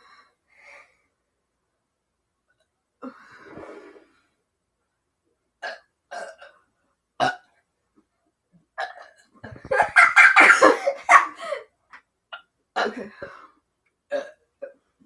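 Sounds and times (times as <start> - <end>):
loud laughter: 9.7 - 11.6.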